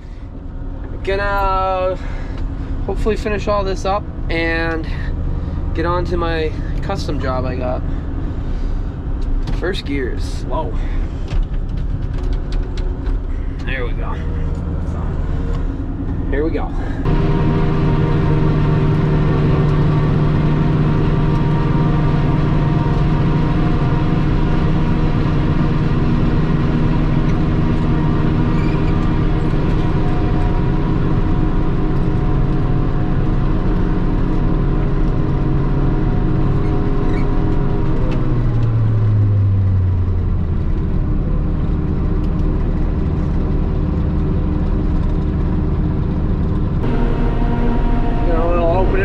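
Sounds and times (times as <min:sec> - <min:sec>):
harvester engine drone: 0:00.0 - 0:49.0.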